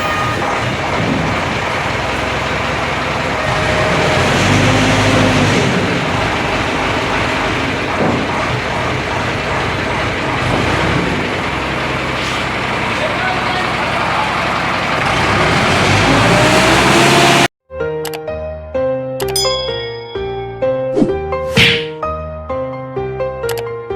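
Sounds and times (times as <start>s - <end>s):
diesel engine clattering: 0.0s - 17.5s.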